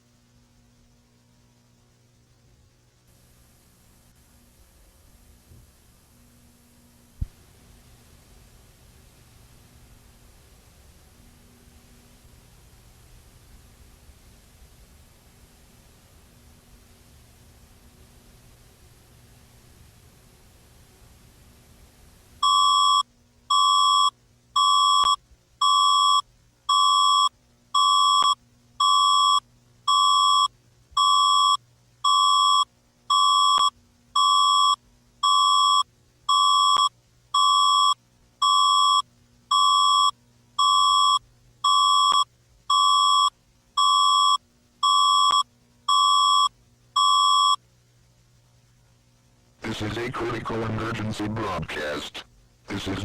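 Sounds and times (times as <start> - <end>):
faint hiss: 0.0 - 22.5.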